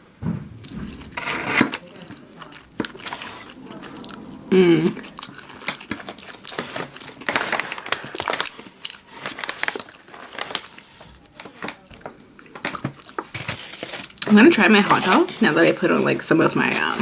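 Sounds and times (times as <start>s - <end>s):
paper wrapping crinkling: 5.7s - 17.0s.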